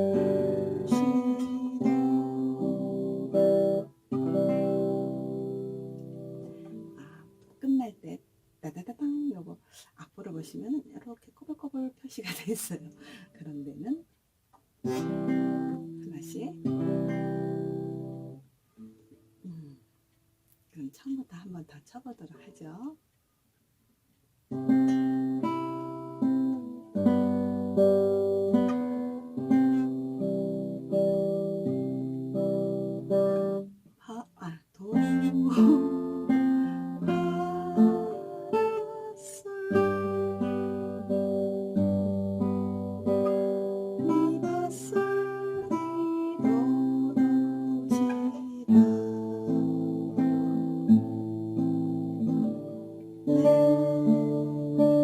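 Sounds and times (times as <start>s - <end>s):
fingerstyle classical guitar: 0.0s - 7.6s, 14.8s - 19.8s, 24.5s - 34.2s, 34.8s - 55.0s.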